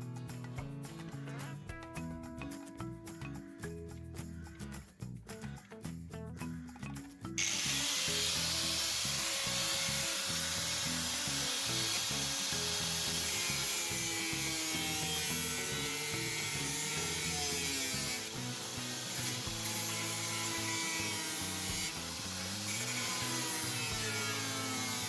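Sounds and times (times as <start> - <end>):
background music: 0.0 - 25.0
noisy power tool running: 7.4 - 25.0.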